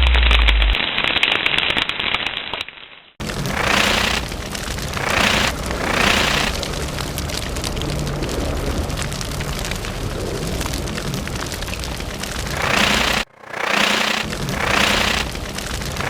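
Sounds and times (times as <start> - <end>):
crackling fire: 0.0 - 16.0
whooshing flame bursts: 3.2 - 16.0.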